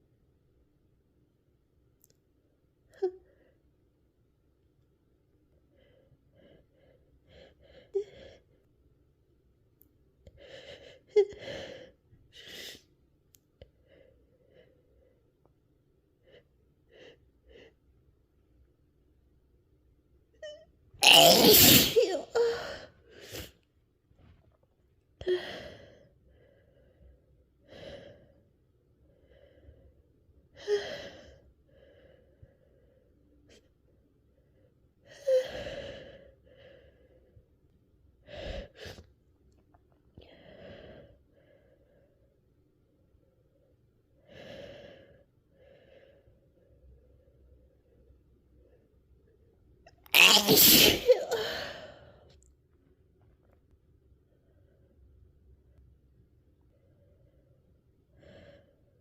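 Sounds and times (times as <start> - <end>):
woman sneezing: 21.0 - 22.6, 50.1 - 51.6
woman gasping and sighing: 50.2 - 52.1.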